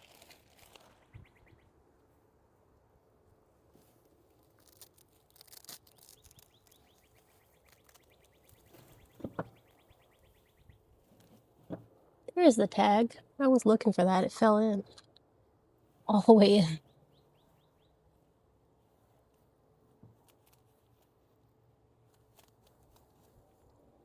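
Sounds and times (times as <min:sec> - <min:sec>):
soil and fabric bag rustling: 0:00.0 - 0:01.1.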